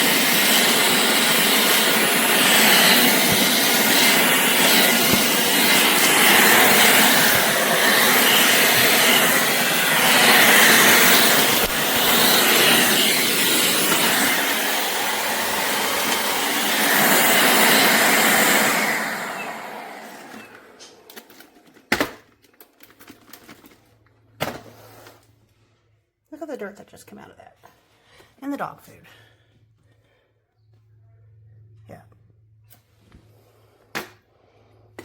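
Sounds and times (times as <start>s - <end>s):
cordless vacuum motor running: 0.0s - 22.2s.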